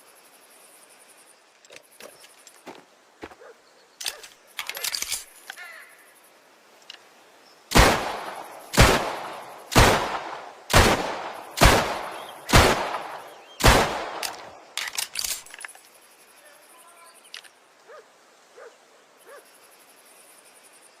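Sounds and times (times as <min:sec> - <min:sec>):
pistol shots with echo: 0:07.7 - 0:14.5.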